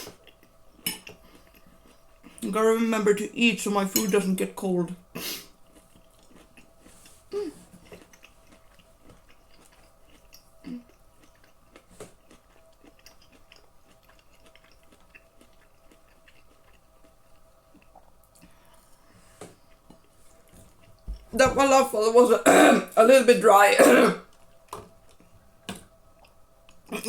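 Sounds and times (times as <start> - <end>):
person chewing: 0.0 - 2.4, 5.3 - 21.0, 24.2 - 25.4.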